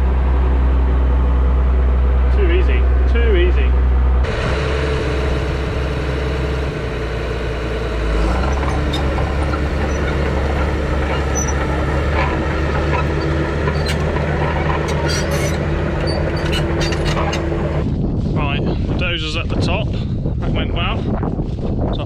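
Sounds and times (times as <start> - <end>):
bulldozer diesel engine: 0.0 - 17.9
steel tracks clanking and squealing: 8.0 - 17.8.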